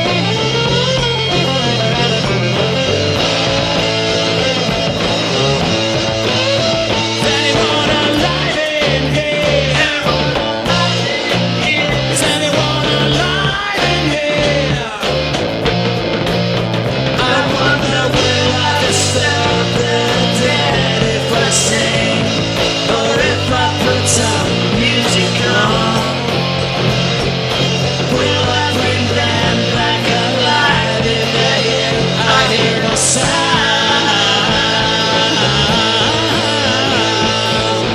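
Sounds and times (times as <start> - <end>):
pulsing bass line: 0.0 - 37.9
rock band playing live: 0.0 - 37.9
person singing: 7.1 - 15.2, 17.2 - 26.5, 28.0 - 37.9.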